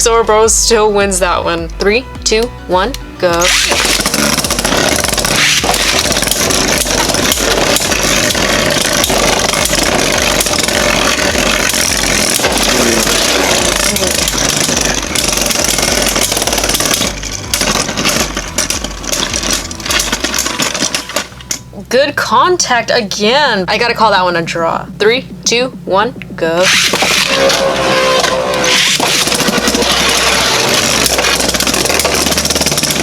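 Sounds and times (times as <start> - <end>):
spinning tops whirring: 3.3 - 21.8, 26.6 - 33.0.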